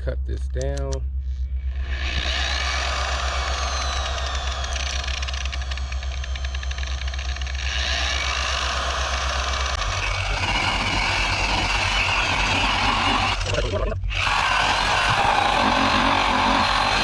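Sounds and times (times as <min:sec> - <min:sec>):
electric buffer humming on plastic: 0:01.3 - 0:17.0.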